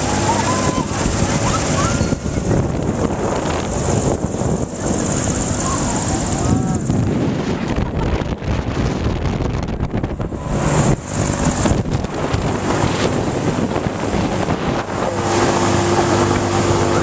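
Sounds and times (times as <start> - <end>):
ride machinery running: 0.0 - 17.0
steady hum: 0.0 - 17.0
wind rushing over microphone: 0.0 - 17.0.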